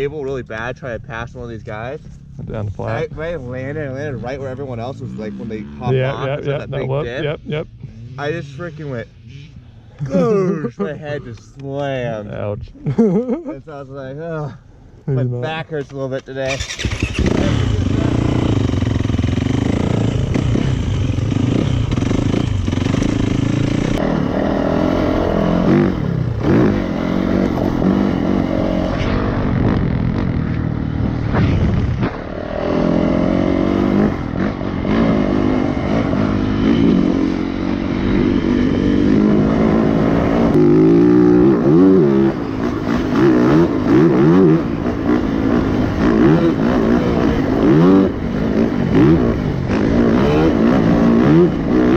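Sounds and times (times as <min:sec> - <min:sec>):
dirt bike engine revving: 0:16.5 - 0:51.9.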